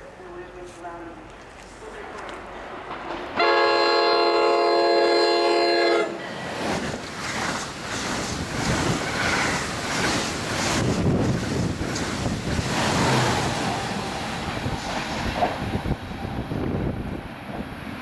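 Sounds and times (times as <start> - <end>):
train passing: 0.0 - 18.0
train air horn blast: 3.4 - 6.2.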